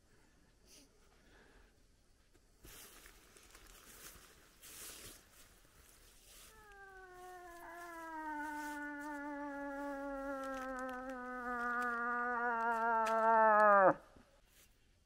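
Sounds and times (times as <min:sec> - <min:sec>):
moose call moaning: 0:06.4 - 0:14.2.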